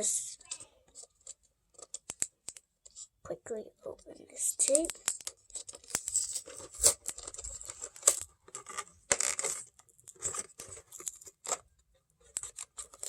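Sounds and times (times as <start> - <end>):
packing tape ripping and crackling: 4.8 - 10.5.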